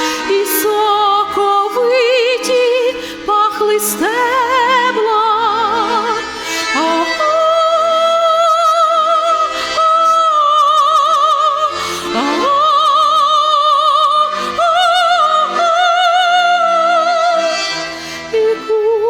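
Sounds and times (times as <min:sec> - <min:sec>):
instrumental accompaniment: 0:00.0 - 0:19.0
woman singing opera: 0:00.0 - 0:19.0.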